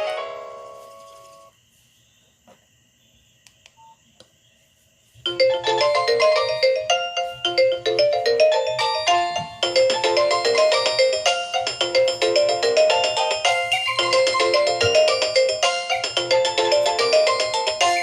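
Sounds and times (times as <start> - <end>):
mobile phone ringtones: 5.3 - 18.0.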